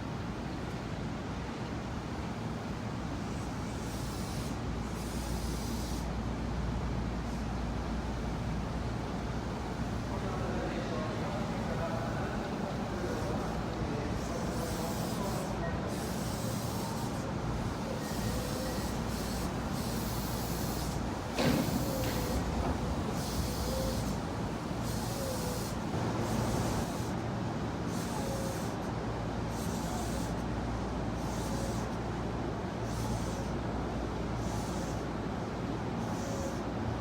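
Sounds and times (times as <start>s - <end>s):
train equipment humming: 7.8s - 27.3s.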